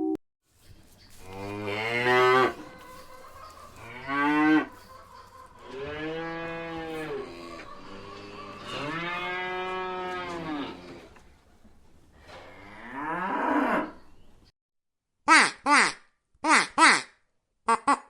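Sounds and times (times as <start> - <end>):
cows mooing: 1.1 - 11.2, 12.3 - 14.0.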